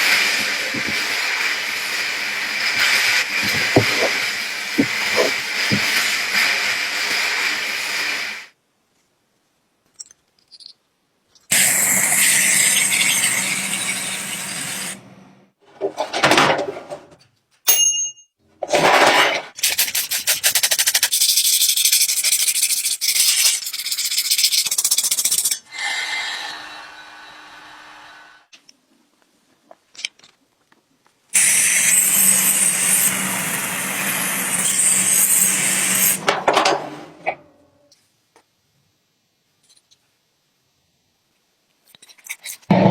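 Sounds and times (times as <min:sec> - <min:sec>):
rusty metal being sanded: 0:31.4 - 0:36.4.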